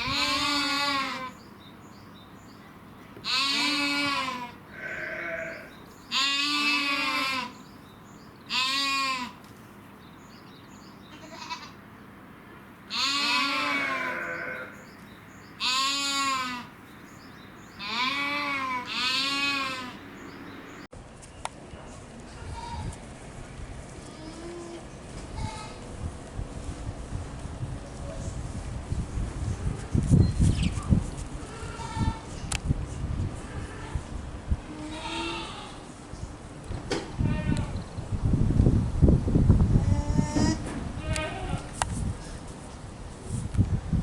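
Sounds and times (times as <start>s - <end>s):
goat bleating: 0.0s - 1.3s, 3.2s - 7.6s, 8.5s - 9.4s, 11.1s - 11.8s, 12.9s - 14.8s, 15.6s - 16.7s, 17.8s - 20.0s, 34.7s - 35.9s.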